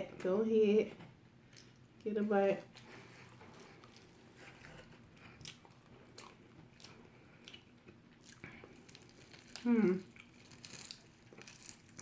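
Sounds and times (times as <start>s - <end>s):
chewing noodles: 2.7s - 12.0s.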